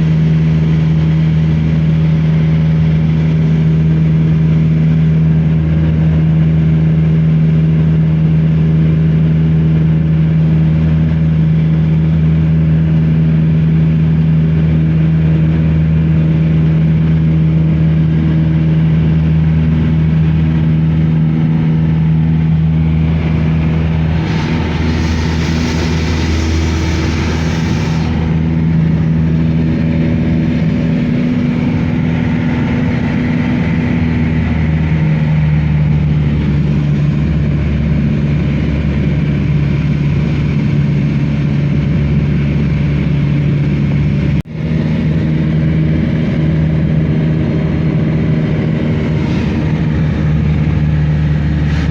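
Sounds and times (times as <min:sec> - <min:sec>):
airliner engines drone in cabin: 0:00.0 - 0:51.9
rising hiss: 0:22.9 - 0:29.4.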